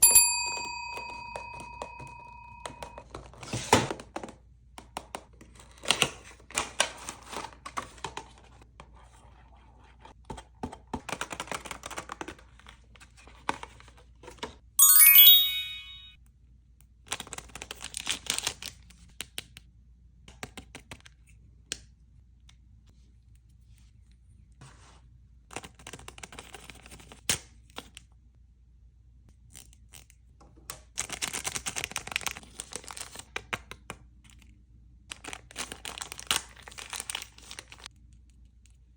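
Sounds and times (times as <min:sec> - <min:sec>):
bell-like ding: 0:00.0 - 0:03.0, 0:14.8 - 0:16.2
rising chime: 0:14.8 - 0:16.2.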